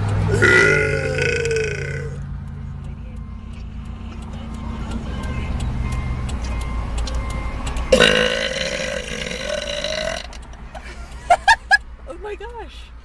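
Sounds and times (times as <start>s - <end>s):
woman burping: 0.3s - 2.2s, 7.9s - 10.4s.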